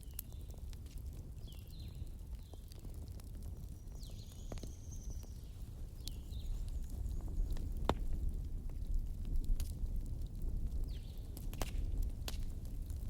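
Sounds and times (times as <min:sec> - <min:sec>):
small birds chirping: 0:00.0 - 0:00.8, 0:01.4 - 0:02.8, 0:03.4 - 0:08.1
wood fire popping and crackling: 0:00.0 - 0:13.0.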